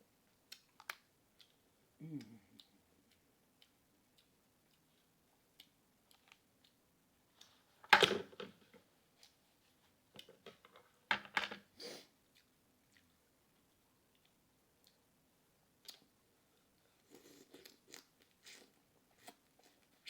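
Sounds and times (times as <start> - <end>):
mouth clicks and smacks while eating: 0.5 - 6.8, 15.8 - 16.1.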